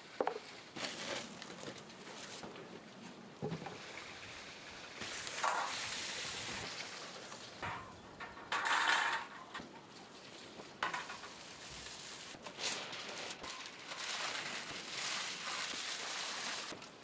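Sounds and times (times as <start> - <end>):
food sizzling in a pan: 5.0 - 7.0, 11.0 - 12.4.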